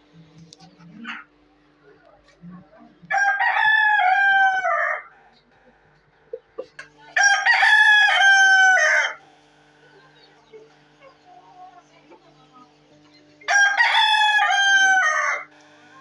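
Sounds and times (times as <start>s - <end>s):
rooster crowing: 3.1s - 5.2s, 7.2s - 9.2s, 13.5s - 15.5s.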